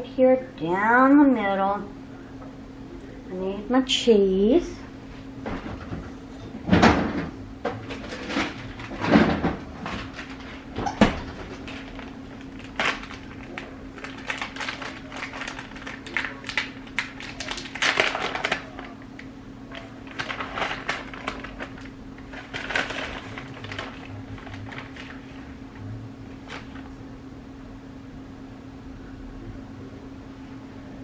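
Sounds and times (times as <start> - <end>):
steady low hum: 0.0 - 31.0
kitchen handling taps and rustles: 6.7 - 11.7.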